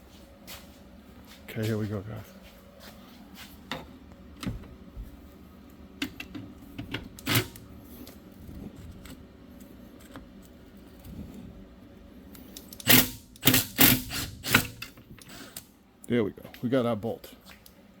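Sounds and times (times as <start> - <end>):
hand tools clicking on metal: 12.4 - 15.6.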